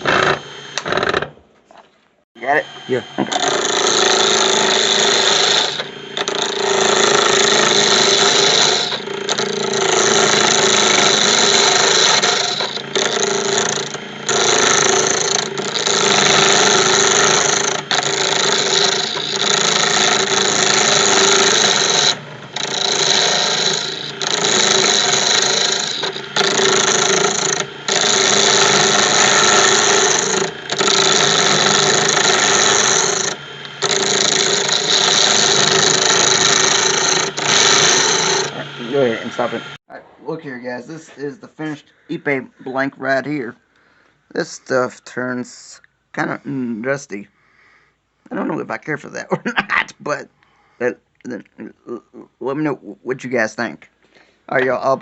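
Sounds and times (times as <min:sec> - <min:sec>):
lathe motor hum: 0:00.0 - 0:01.3, 0:02.4 - 0:39.8
turning tool cutting wood: 0:00.0 - 0:01.4, 0:02.4 - 0:39.8.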